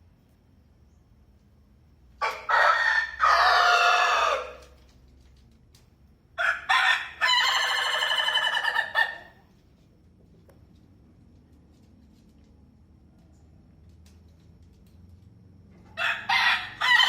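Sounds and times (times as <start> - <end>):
rooster crowing: 2.2 - 4.8, 6.4 - 9.4, 15.8 - 17.0.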